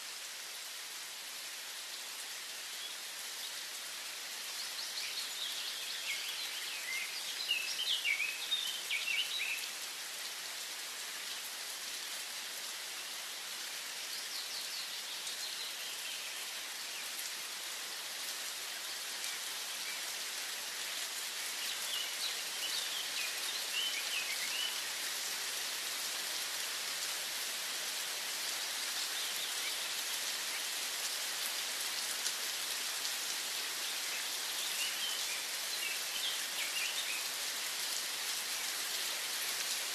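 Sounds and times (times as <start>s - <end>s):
rain falling: 0.0s - 39.9s
songbirds chirping: 2.2s - 9.8s, 13.0s - 17.7s, 18.6s - 25.6s, 33.4s - 39.9s.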